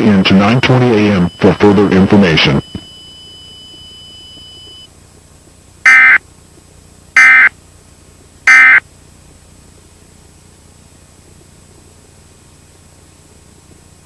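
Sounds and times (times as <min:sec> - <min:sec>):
buzzing digital data bursts: 0:05.9 - 0:06.2, 0:07.2 - 0:07.5, 0:08.5 - 0:08.8.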